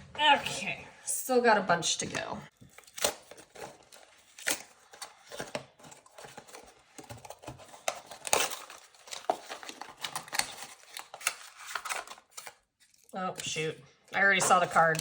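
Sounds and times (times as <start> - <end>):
packaging crinkling: 2.5 - 13.2.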